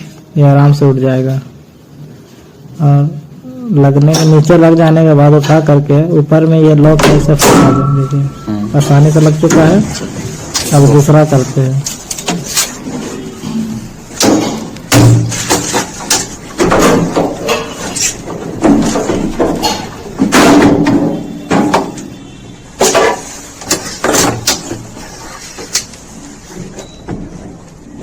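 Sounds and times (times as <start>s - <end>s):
washing machine tub knocks and clatter: 14.2s - 22.0s.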